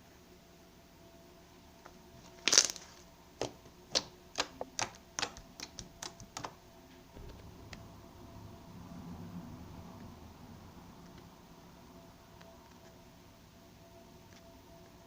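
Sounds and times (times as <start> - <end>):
slime squelch: 2.2 - 6.5.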